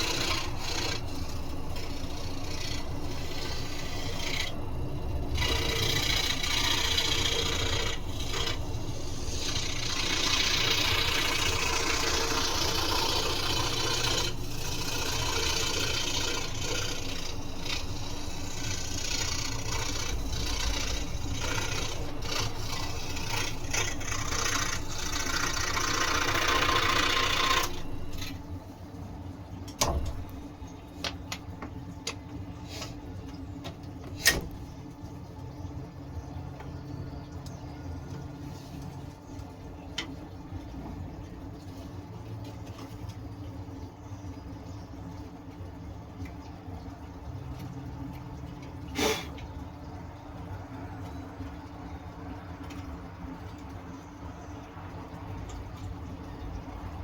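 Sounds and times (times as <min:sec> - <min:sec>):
scroll saw cutting wood: 0:00.0 - 0:28.4.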